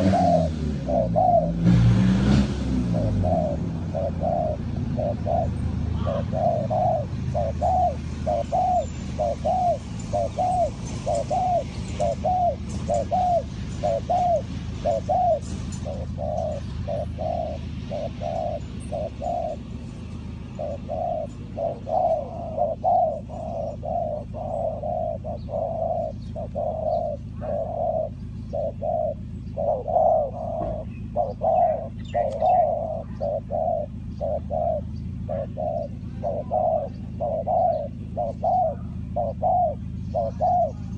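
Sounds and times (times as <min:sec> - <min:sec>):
dove cooing: 0:00.0 - 0:40.9
small birds chirping: 0:00.0 - 0:40.9.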